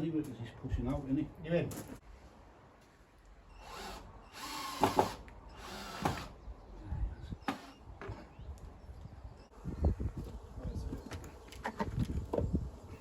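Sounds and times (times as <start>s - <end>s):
power drill bursts: 3.6s - 6.4s, 7.5s - 7.8s.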